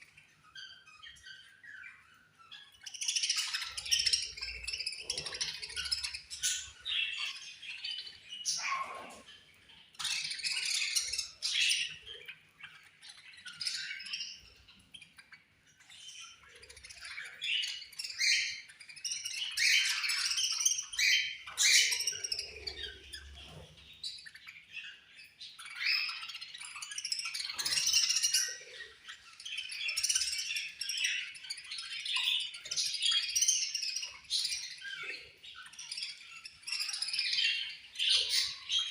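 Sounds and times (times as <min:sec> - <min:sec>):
budgerigars chirping: 0:00.0 - 0:38.9
bird squawks: 0:02.7 - 0:15.5.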